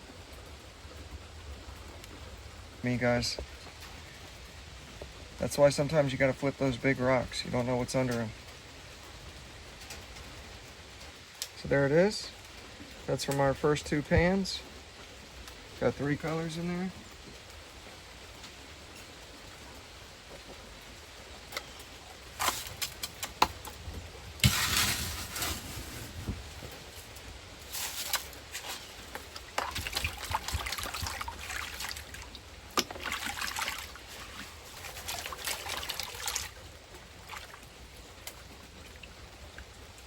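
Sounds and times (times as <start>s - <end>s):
gravel clicking: 11.0s - 40.0s
water sloshing in a pan: 21.5s - 40.0s.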